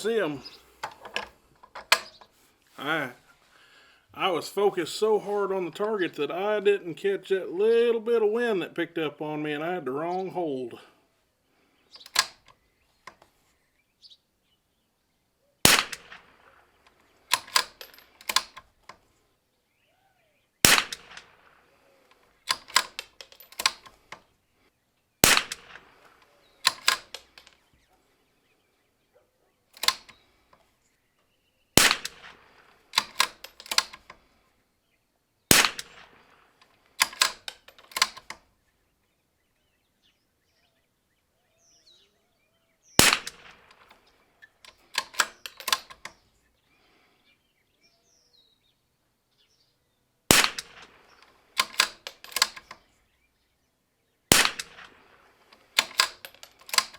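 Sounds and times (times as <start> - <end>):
rifle bolt metallic clicks: 0.0 - 2.3, 12.0 - 13.3, 15.7 - 19.0, 20.6 - 24.2, 25.2 - 27.6, 29.8 - 30.6, 31.8 - 34.2, 35.5 - 38.4, 43.0 - 46.2, 50.3 - 52.8, 54.3 - 56.9
rifle shots: 15.6 - 18.5, 20.6 - 21.7, 25.2 - 27.4, 31.8 - 34.0, 35.5 - 38.2, 43.0 - 44.0, 50.3 - 52.7, 54.3 - 56.9.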